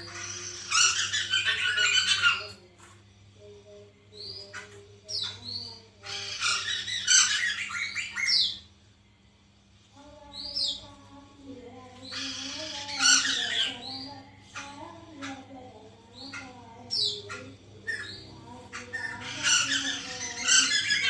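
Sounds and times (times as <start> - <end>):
bird whistled chirps and squawks: 0.0 - 2.5, 4.2 - 8.7, 12.0 - 14.1, 16.3 - 21.0.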